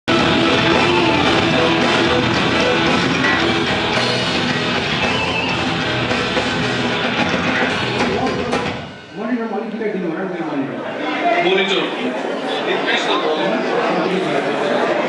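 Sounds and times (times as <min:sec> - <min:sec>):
metal band playing live: 0:00.1 - 0:09.5.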